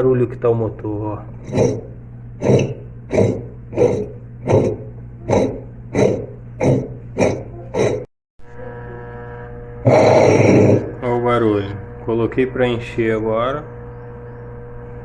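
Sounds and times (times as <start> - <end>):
steady motor hum: 0.0 - 15.0
motor rhythmic grinding: 1.3 - 8.1, 9.7 - 11.6.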